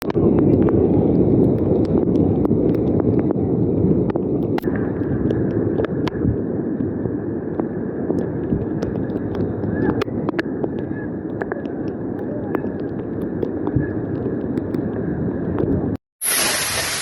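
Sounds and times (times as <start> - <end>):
wind on microphone: 0.0 - 16.0
sharp ticks of rain impacts: 4.1 - 15.8
rushing water: 16.2 - 17.0.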